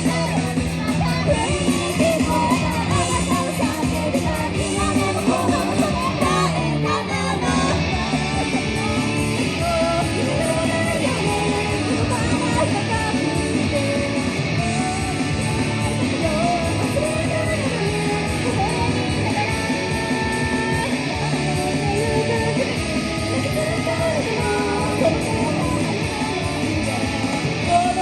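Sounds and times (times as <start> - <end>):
wavering melody line: 0.0 - 6.5
drums: 0.0 - 28.0
electric guitars: 0.0 - 28.0.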